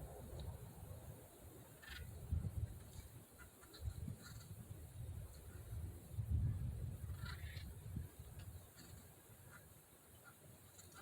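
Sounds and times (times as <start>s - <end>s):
wind rumble on microphone: 0.0s - 9.0s
faint woodpecker call: 1.7s - 2.2s.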